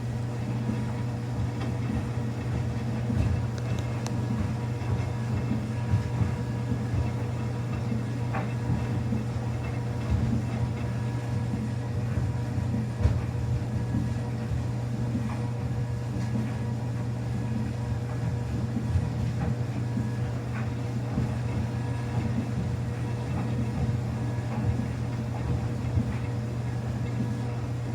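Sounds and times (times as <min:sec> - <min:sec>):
washing machine humming: 0:00.0 - 0:27.9
soft knocks in washing machine: 0:12.1 - 0:14.2.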